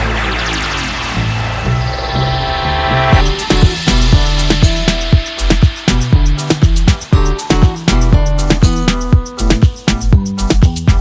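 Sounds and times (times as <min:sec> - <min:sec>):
funk music with punchy beat: 0:03.1 - 0:11.0.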